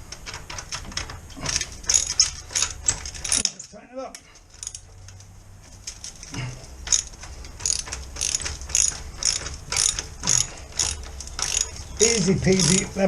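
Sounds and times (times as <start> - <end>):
ratchet pawl clicks: 0.1 - 3.5, 6.8 - 13.0.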